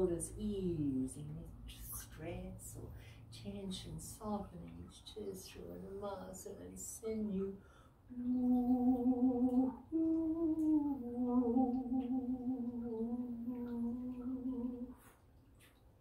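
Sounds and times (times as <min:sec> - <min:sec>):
woman humming: 0:08.1 - 0:15.0.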